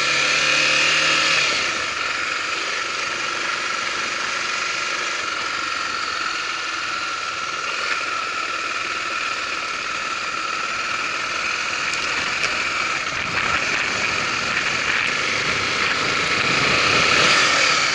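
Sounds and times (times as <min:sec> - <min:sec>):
motorcycle engine running: 0:00.0 - 0:17.9.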